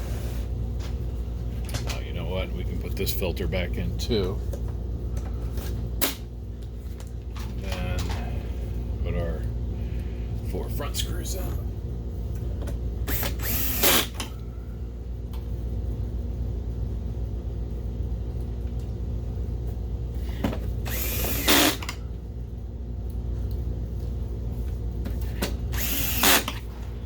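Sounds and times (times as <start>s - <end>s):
steady low hum: 0.0s - 27.0s
cordless drill driving screws: 13.1s - 14.2s, 20.8s - 22.0s, 25.7s - 26.7s.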